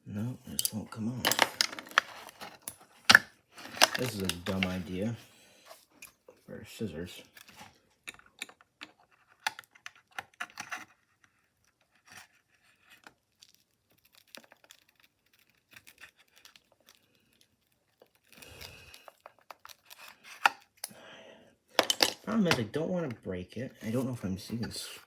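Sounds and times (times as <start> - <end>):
metal blade scraping plastic: 1.4 - 4.9.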